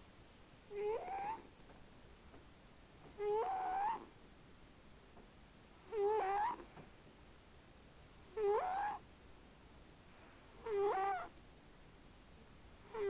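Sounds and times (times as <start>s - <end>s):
cat snoring: 0.7s - 1.5s, 3.1s - 4.1s, 5.8s - 6.7s, 8.3s - 9.0s, 10.5s - 11.3s, 12.8s - 13.0s.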